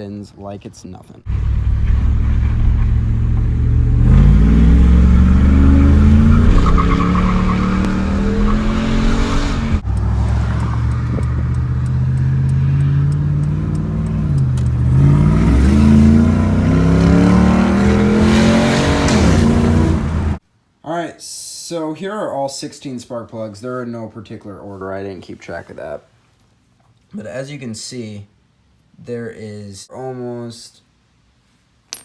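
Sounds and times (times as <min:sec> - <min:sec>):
truck engine accelerating: 0:01.3 - 0:20.4.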